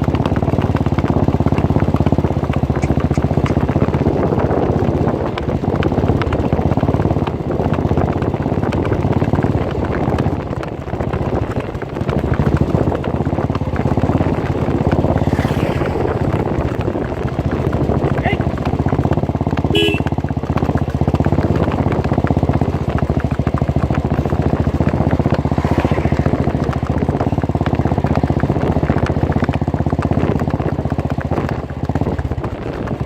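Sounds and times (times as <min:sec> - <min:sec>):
motorcycle engine running: 0:00.0 - 0:33.0
wind on microphone: 0:02.7 - 0:18.5.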